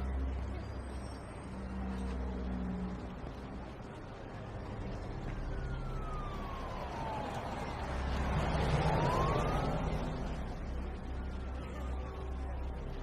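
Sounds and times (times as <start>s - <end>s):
low vehicle hum: 0.0s - 13.0s
police siren wailing: 4.8s - 13.0s.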